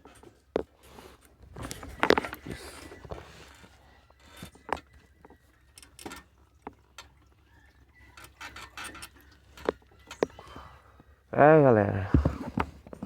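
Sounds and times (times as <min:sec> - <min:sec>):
motorcycle suspension clicks and creaks: 0:00.0 - 0:07.2, 0:08.1 - 0:10.6.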